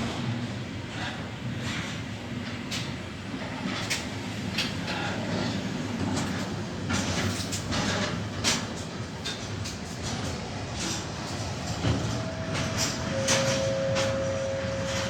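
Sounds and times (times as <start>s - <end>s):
freight train rumbling: 0.0s - 15.0s
wheels clanking over rail joints: 6.2s - 15.0s
short wheel squeals: 12.1s - 15.0s.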